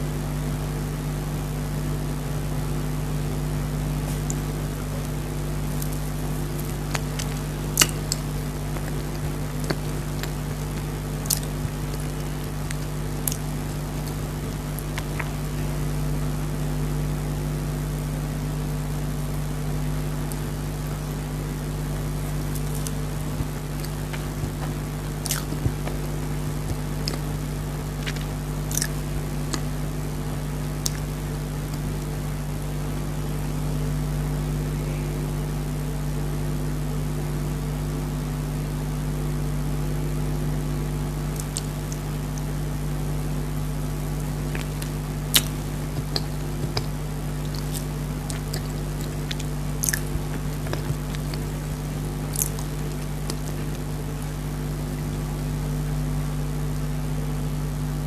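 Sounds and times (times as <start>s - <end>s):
steady mechanical hum: 0.0s - 58.0s
biting and chewing cake: 3.5s - 32.4s, 41.2s - 55.6s.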